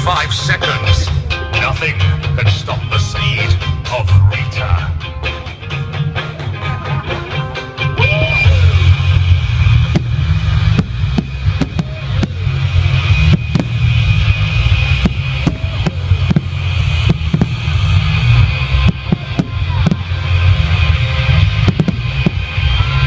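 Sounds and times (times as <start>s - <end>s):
show music with heavy bass: 0.0s - 23.0s
firework bangs: 8.9s - 23.0s.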